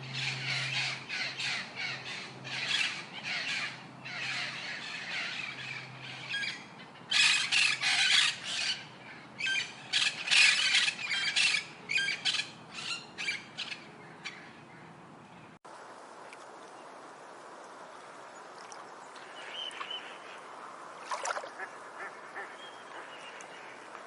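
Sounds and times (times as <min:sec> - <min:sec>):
birds squawking: 0:00.1 - 0:14.6.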